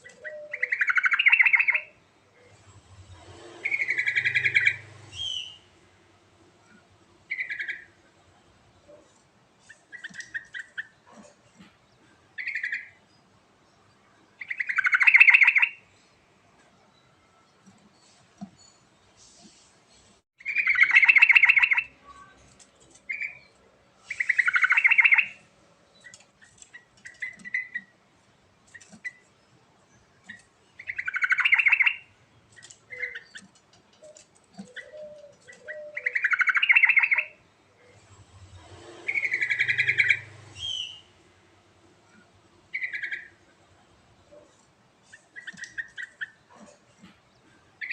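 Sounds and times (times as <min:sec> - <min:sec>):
bird singing bubbling phrases: 0:34.6 - 0:37.4.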